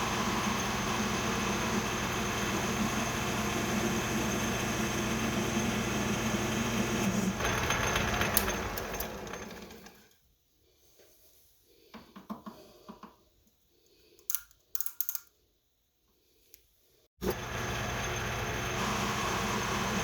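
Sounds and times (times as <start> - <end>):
machine motor running: 0.0 - 9.8, 17.2 - 20.0
metal parts clinking: 14.2 - 15.4.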